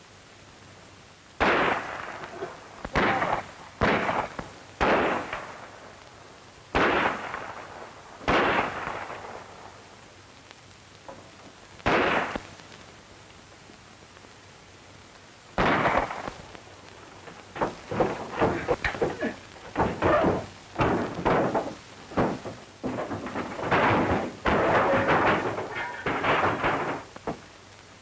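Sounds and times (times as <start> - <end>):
gunshots with echo: 2.9 - 5.4, 11.9 - 12.4, 15.6 - 16.3.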